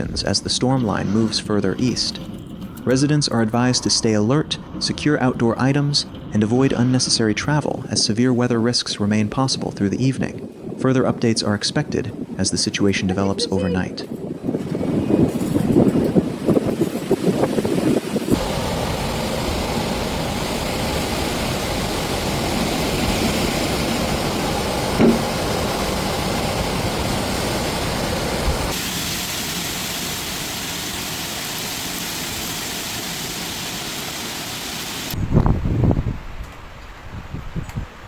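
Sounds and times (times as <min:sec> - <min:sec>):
heavy rain hissing: 0:00.0 - 0:07.9, 0:16.6 - 0:35.2
short knock: 0:25.0 - 0:25.4.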